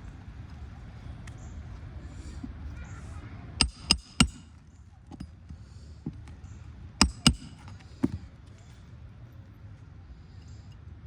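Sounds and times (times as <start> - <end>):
sharp metallic knocks: 3.6 - 4.5, 7.0 - 8.2.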